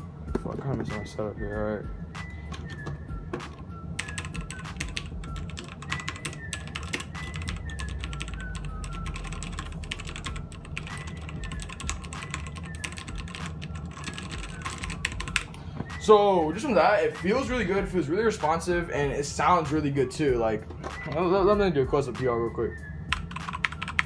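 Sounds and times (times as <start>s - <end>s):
fast mechanical keyboard typing: 3.5s - 15.6s, 23.1s - 24.0s.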